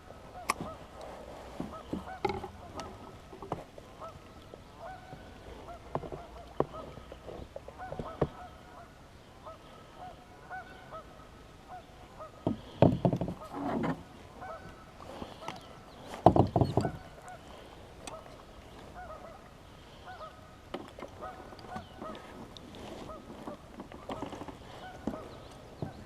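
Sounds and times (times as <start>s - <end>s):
close knocks and rustles: 0.6s - 3.8s, 5.1s - 8.4s, 12.4s - 14.1s, 16.1s - 17.1s, 21.7s - 26.0s
geese honking: 1.6s - 3.0s, 4.0s - 7.2s, 7.8s - 12.8s, 14.3s - 15.9s, 16.7s - 20.6s, 21.2s - 26.0s.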